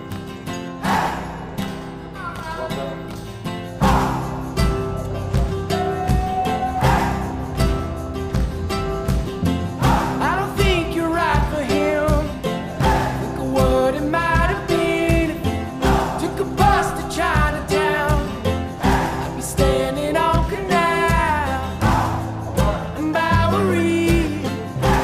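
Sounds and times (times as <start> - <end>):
acoustic folk-pop song: 0.0 - 25.0.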